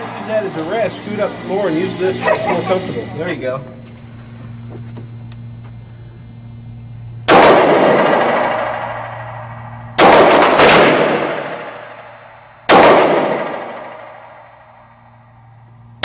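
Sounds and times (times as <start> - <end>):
gunshots with echoing decay: 7.3 - 14.8.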